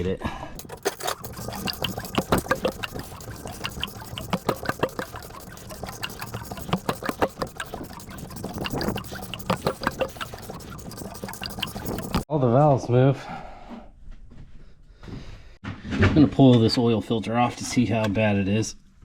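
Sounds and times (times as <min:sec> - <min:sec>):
engine turned by hand clicking: 0:00.6 - 0:12.3.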